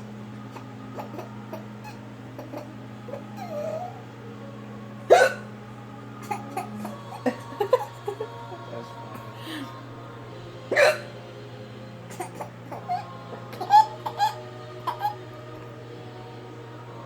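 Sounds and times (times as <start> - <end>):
woman hiccuping: 5.1 - 5.5, 10.7 - 11.1.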